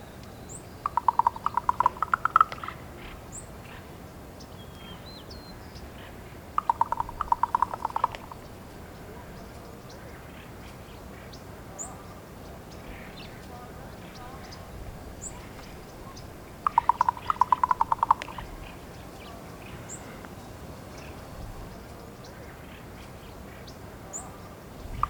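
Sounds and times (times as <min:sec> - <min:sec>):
raven knocking clicks: 0:06.6 - 0:08.4, 0:16.7 - 0:18.4.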